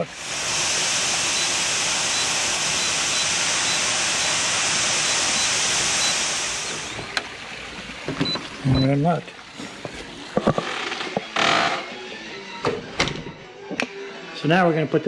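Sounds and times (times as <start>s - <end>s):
loud steady hiss: 0.0s - 7.2s.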